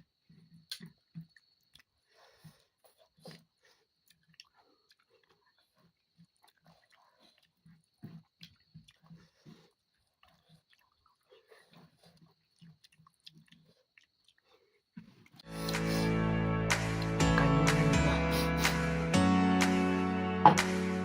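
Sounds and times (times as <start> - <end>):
chewing snails: 0.0 - 15.5.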